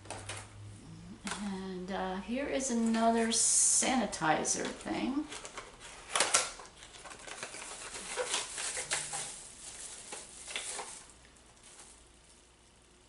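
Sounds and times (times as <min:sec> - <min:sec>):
packaging rustling and crinkling: 0:04.6 - 0:12.5.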